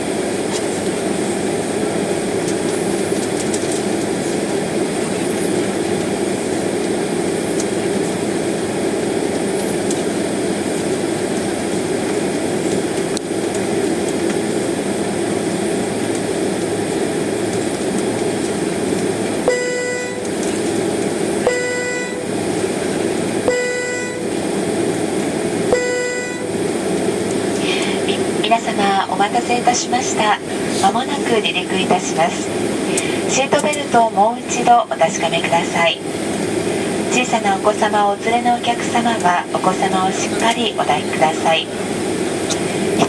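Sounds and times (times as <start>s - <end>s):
jet engine and cabin noise: 0.0s - 43.0s
short steady tones: 19.5s - 20.4s, 21.4s - 22.4s, 23.4s - 24.4s, 25.7s - 26.6s.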